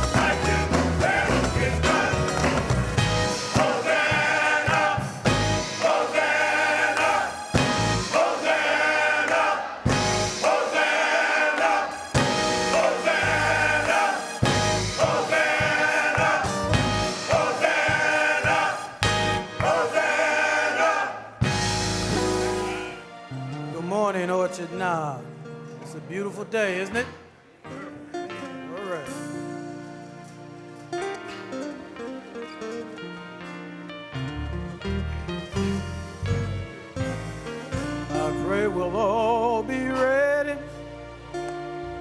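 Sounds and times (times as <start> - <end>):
band playing steady beat: 0.0 - 20.4, 21.4 - 23.1
choir singing gospel music: 0.0 - 24.8, 36.2 - 42.0.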